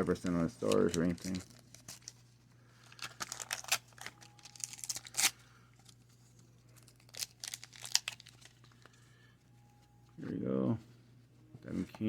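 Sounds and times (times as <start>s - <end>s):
wax paper wrapper tearing and crinkling: 0.0s - 9.0s.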